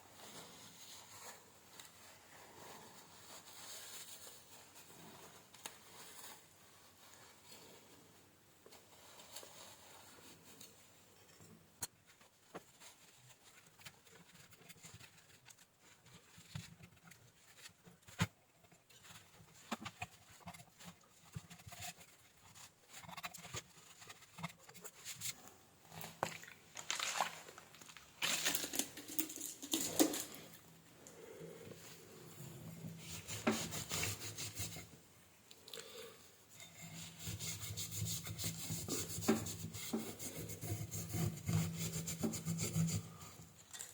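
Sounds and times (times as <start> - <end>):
rubbing and scraping: 12.1 - 35.0, 36.4 - 43.9.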